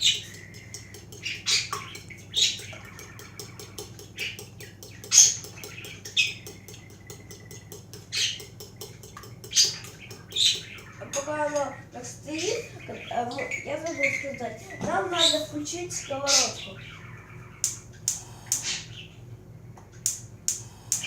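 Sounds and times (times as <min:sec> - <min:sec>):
utensil clicking against bowl: 0:00.0 - 0:11.7, 0:17.6 - 0:18.7, 0:20.0 - 0:21.0.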